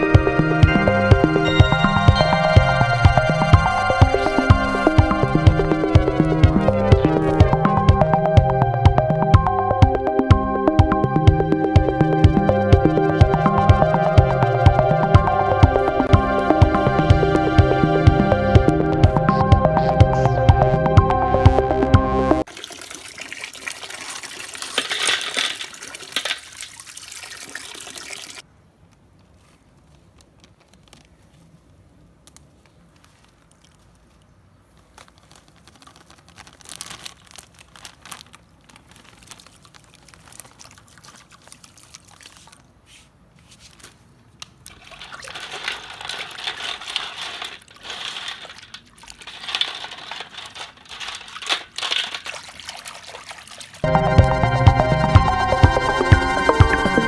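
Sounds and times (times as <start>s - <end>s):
liquid running and splashing: 22.4s - 28.4s, 38.9s - 42.7s, 44.6s - 53.9s.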